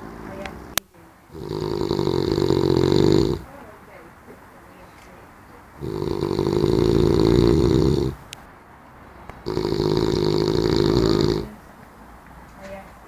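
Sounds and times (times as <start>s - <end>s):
rattling snores: 1.3s - 3.6s, 5.8s - 8.3s, 9.4s - 11.6s.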